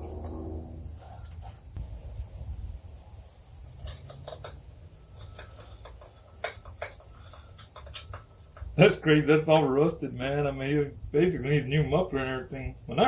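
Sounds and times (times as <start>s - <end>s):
low hum: 0.0s - 1.5s
steady high-pitched hiss: 0.0s - 13.0s.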